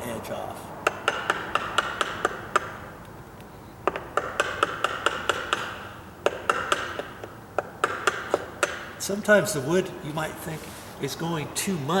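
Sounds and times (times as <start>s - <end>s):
hammer tapping a wood chisel: 0.8s - 3.1s, 3.8s - 9.0s.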